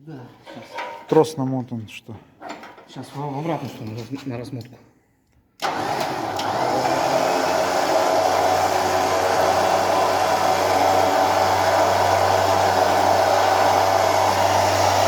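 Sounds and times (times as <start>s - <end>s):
electric winch motor running: 5.6s - 15.0s.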